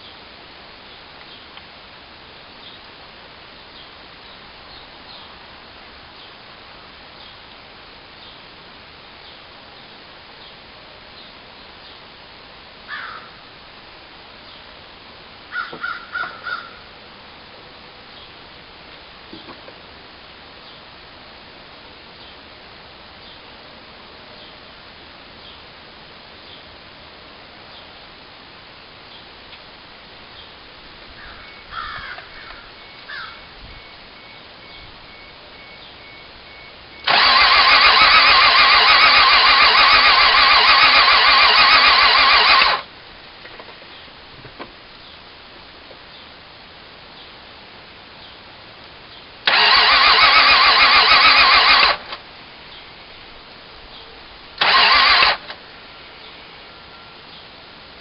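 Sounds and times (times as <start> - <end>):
faint repeating beep: 33.8 - 37.0
starter motor cranking engine: 37.0 - 42.9, 49.5 - 52.2, 54.6 - 55.6.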